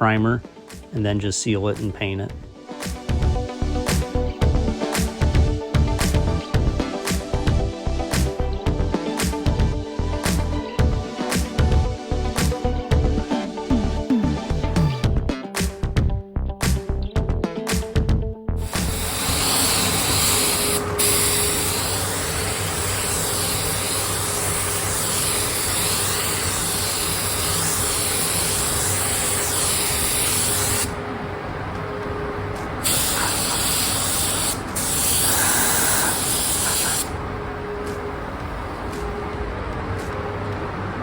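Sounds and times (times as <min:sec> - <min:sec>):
spray paint hissing: 0:18.6 - 0:31.0, 0:32.8 - 0:37.2.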